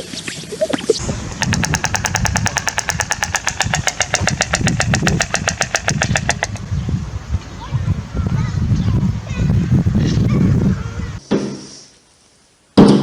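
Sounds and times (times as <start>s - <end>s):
stork clattering its bill: 1.1s - 6.8s.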